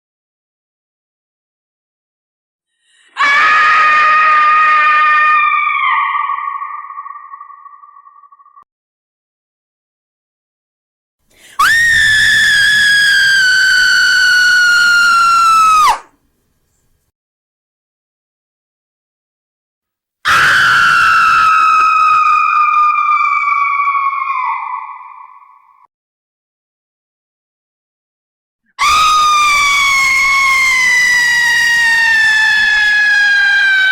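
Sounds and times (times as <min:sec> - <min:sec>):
woman screaming: 0:03.2 - 0:08.5, 0:11.6 - 0:16.1, 0:20.3 - 0:25.7, 0:28.8 - 0:33.9.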